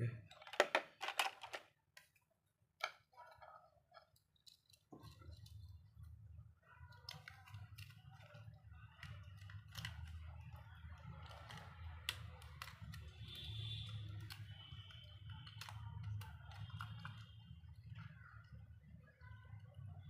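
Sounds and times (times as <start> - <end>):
plastic phone parts clicking: 0.2 - 2.2, 6.9 - 17.2.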